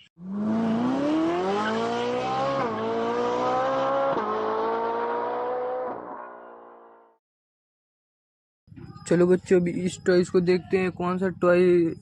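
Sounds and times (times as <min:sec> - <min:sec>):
car engine revving: 0:00.0 - 0:07.2.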